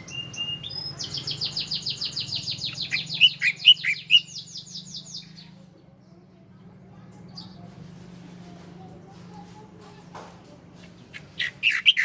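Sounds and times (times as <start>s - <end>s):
bird trilling song: 0.0s - 5.6s, 11.0s - 12.0s.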